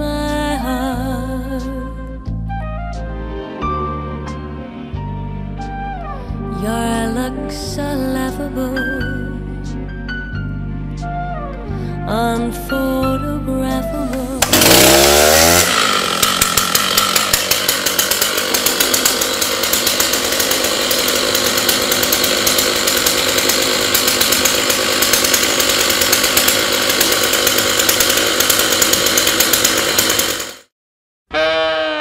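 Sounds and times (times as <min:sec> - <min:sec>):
chainsaw cutting wood: 0:14.1 - 0:30.7.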